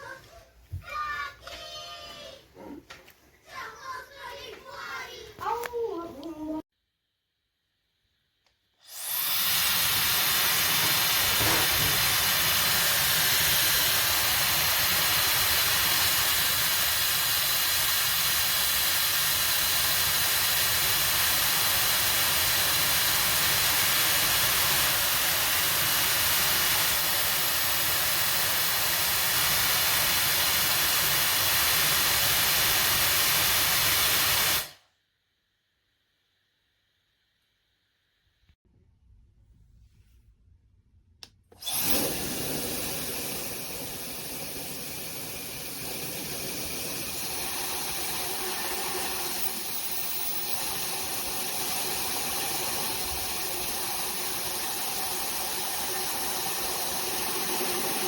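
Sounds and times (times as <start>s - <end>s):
hair dryer blowing: 8.8s - 34.8s, 41.5s - 58.0s.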